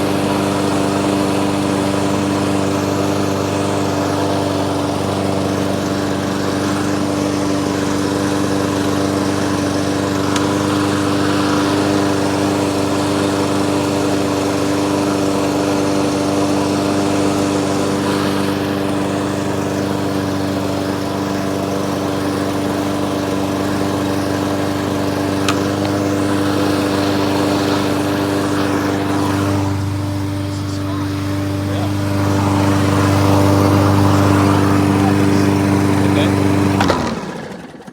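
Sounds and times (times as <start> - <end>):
lawnmower engine running: 0.0 - 37.9.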